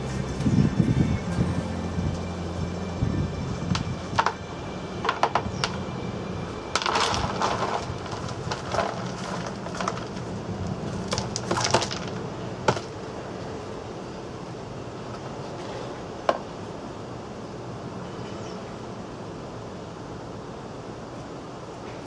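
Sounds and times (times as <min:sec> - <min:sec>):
sharp snaps and crackles: 0:06.8 - 0:12.9.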